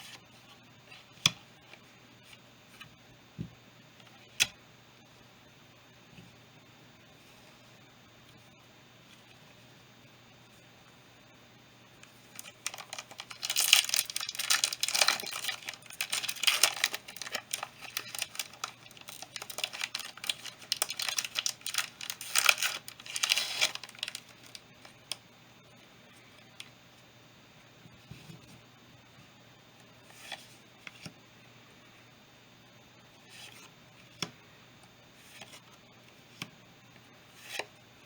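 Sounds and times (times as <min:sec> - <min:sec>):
foil wrapper tearing and crinkling: 0:12.3 - 0:25.0.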